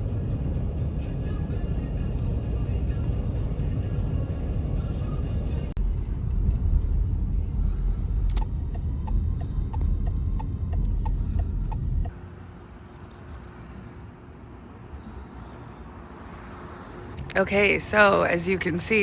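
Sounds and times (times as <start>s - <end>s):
car road rumble: 0.0s - 19.0s
turn signal ticking: 8.1s - 12.1s.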